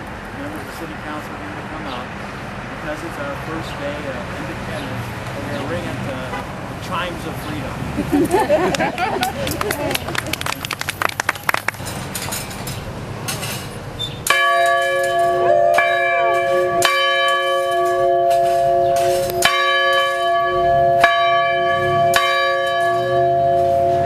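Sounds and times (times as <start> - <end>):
schoolhouse bell ringing: 14.3 - 24.0.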